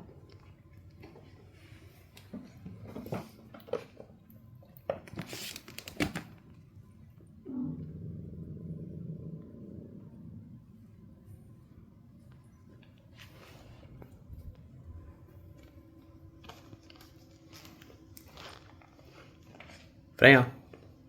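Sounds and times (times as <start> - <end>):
low cat growl: 7.4 - 11.0.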